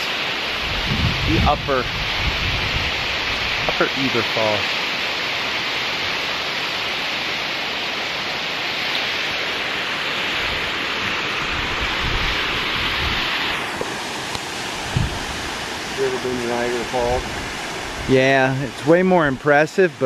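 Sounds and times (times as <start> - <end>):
waterfall rushing: 0.0 - 20.0
wind gusting on microphone: 0.5 - 4.3, 10.2 - 19.4.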